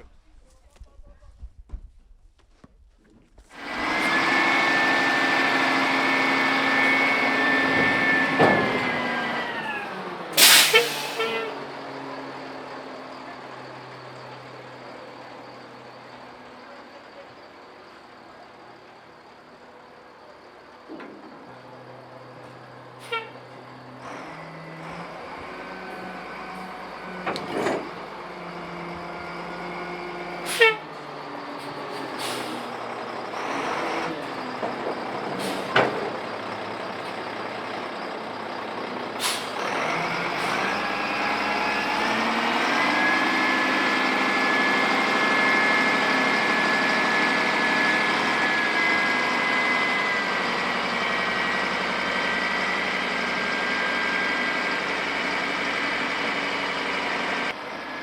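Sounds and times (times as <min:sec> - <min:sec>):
sharp knocks and clanks: 0:07.6 - 0:08.9.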